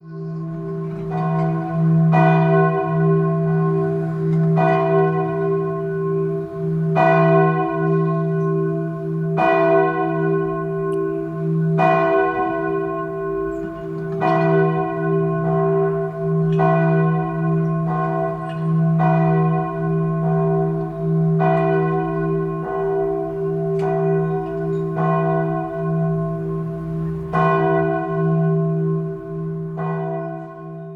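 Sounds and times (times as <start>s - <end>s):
church bell tolling: 0.0s - 30.9s.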